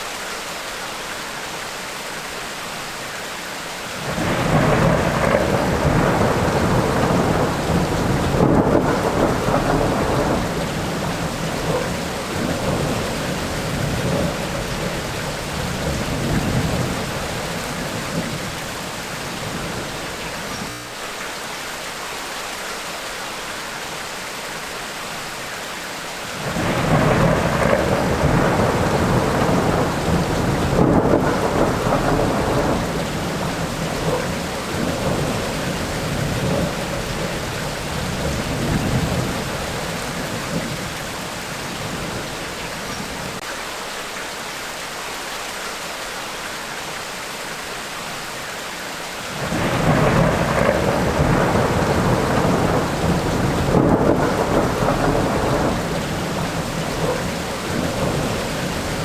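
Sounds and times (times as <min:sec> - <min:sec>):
heavy rain: 0:00.0 - 0:59.0
thunder rumbling: 0:04.0 - 0:20.8, 0:26.4 - 0:43.4, 0:49.3 - 0:59.0.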